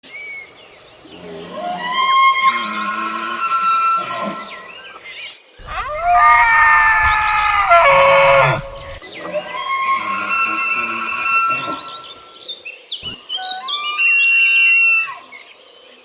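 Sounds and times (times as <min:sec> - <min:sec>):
faint drawn-out tonal calls: 0:01.1 - 0:05.0, 0:05.6 - 0:15.3
deer grunting: 0:05.6 - 0:09.0
deer bugling: 0:05.6 - 0:12.2.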